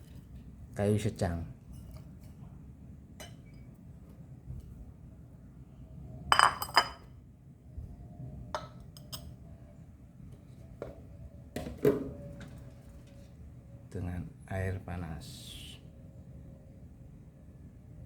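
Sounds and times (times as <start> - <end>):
glass clinking: 6.3 - 7.1.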